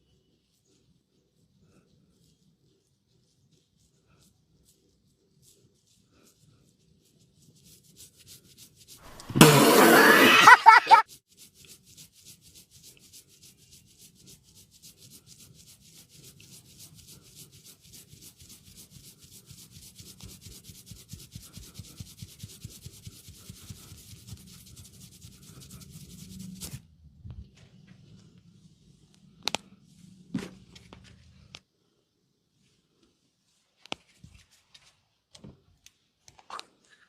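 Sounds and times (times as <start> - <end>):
hands rubbing hair and scalp: 0.4 - 26.8, 32.6 - 35.2.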